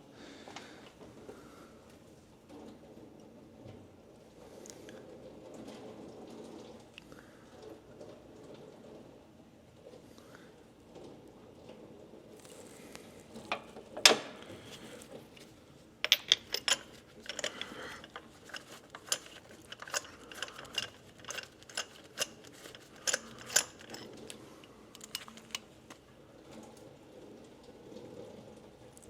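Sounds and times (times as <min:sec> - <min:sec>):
ratchet and socket clicking: 0:16.1 - 0:24.0.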